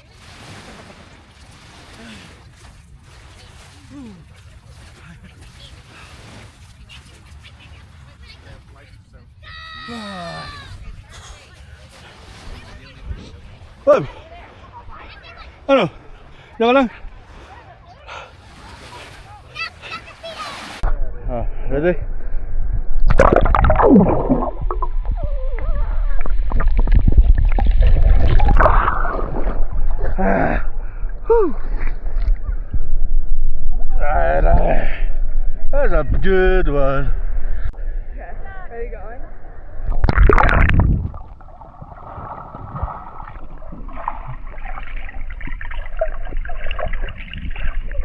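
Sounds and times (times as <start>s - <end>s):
water splashing and gurgling: 0.0s - 8.8s, 23.0s - 32.7s, 39.8s - 48.0s
steady low rumble: 20.9s - 48.0s.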